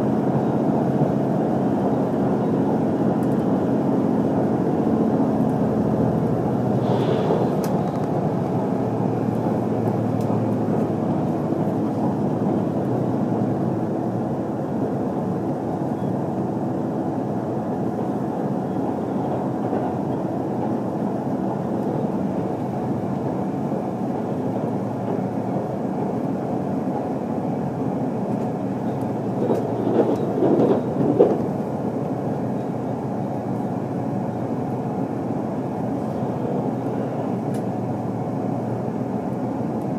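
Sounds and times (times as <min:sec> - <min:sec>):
train rumbling at speed: 0:00.0 - 0:39.9.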